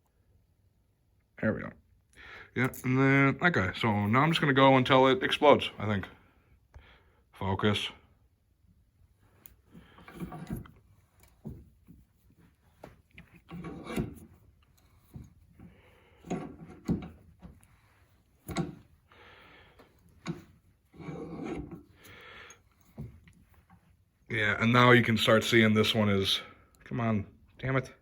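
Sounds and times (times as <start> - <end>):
metal tube creaking and rubbing: 9.3 - 24.2.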